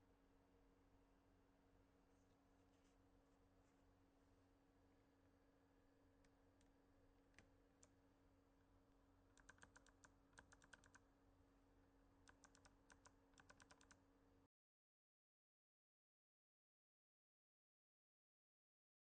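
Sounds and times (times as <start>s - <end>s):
faint mechanical keyboard typing: 9.3s - 11.1s, 12.2s - 14.0s.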